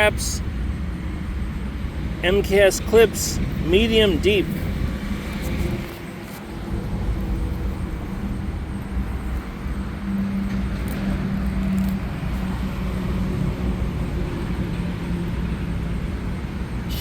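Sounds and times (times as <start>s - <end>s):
passing vehicle engine hum: 0.0s - 17.0s
road traffic rumble: 0.0s - 17.0s.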